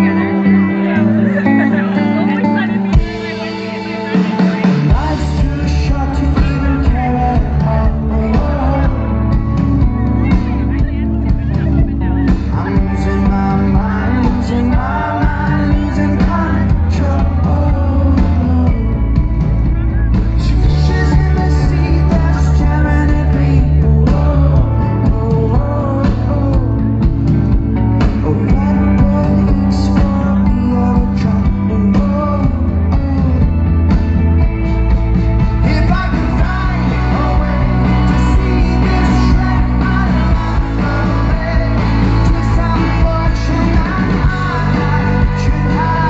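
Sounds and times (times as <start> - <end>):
drums: 0.0 - 46.0
electric guitars: 0.0 - 46.0
heavy bass line: 0.0 - 46.0
man singing: 0.0 - 46.0
rock band playing live: 0.0 - 46.0.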